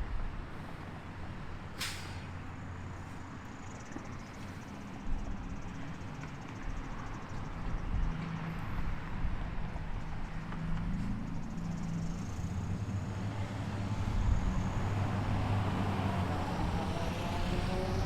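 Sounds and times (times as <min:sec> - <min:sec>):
short sharp hiss: 0:01.8 - 0:02.3.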